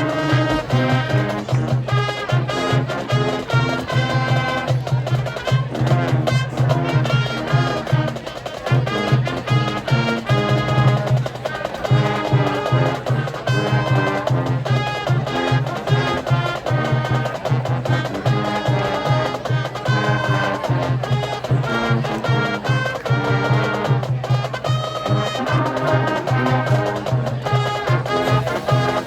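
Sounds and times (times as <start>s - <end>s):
marching band brass: 0.0s - 29.0s
marching drums: 0.0s - 29.0s.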